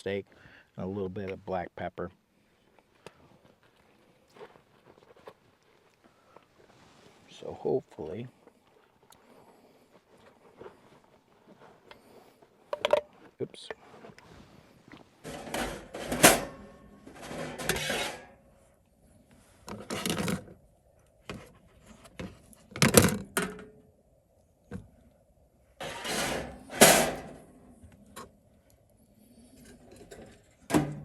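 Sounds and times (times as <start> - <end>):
dishes scraping and clattering: 15.3 - 18.3, 25.8 - 27.3.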